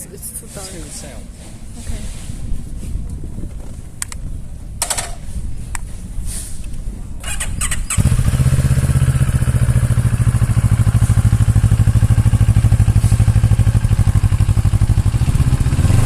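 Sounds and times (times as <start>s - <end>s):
motorcycle engine cranking: 4.8s - 5.2s, 7.2s - 9.1s
motorcycle engine idling: 7.2s - 16.0s.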